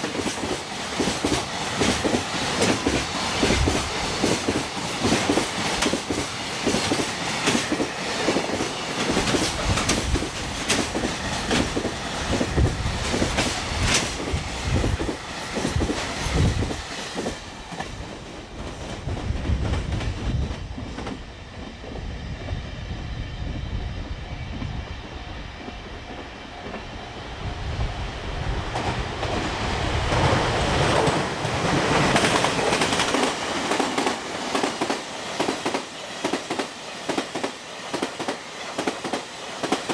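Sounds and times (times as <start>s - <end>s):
train wheels clattering over rail joints: 0.0s - 18.0s, 28.6s - 39.9s
steady train rumble: 0.0s - 39.9s.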